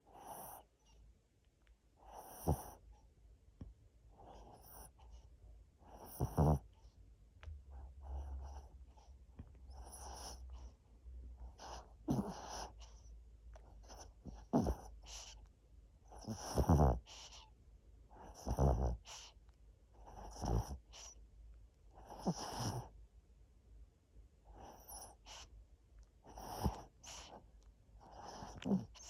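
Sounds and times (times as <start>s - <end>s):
dog snoring: 0.0s - 1.0s, 2.0s - 2.9s, 4.1s - 5.1s, 5.8s - 6.9s, 7.7s - 9.1s, 9.7s - 10.7s, 11.4s - 15.4s, 16.0s - 17.5s, 18.1s - 21.2s, 21.9s - 23.0s, 24.4s - 25.5s, 26.2s - 27.4s, 28.0s - 29.0s.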